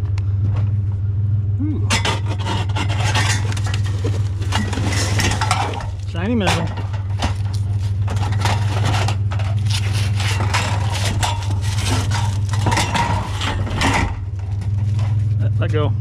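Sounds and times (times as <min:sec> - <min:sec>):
vehicle engine idling: 0:00.0 - 0:16.0
scrap metal and plastic clattering: 0:01.9 - 0:15.4.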